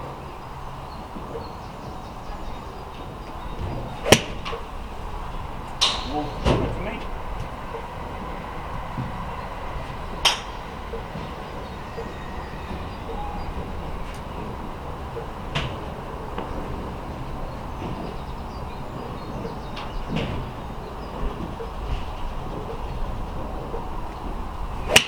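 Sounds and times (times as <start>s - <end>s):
low background rumble: 0.0s - 25.0s
golf club striking ball: 3.7s - 5.0s, 5.7s - 6.8s.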